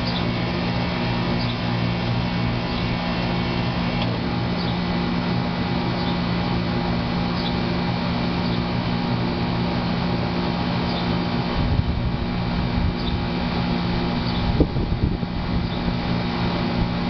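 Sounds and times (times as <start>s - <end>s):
air conditioner humming: 0.0s - 17.0s
low rumbling: 11.4s - 17.0s.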